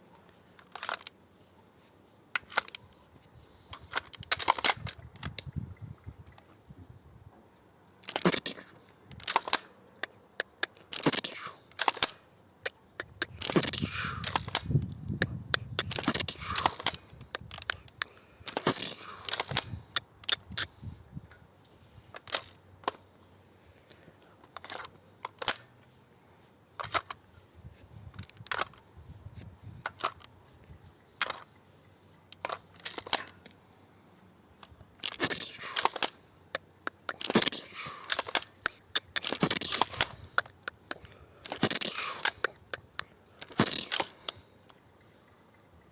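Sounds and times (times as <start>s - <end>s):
airsoft shotgun clicks and clacks: 0.6s - 1.2s, 2.4s - 3.0s, 3.7s - 5.6s, 8.0s - 20.7s, 22.1s - 23.0s, 24.4s - 25.8s, 26.8s - 27.2s, 28.1s - 28.8s, 29.8s - 30.4s, 31.2s - 31.6s, 32.3s - 33.6s, 34.6s - 45.9s.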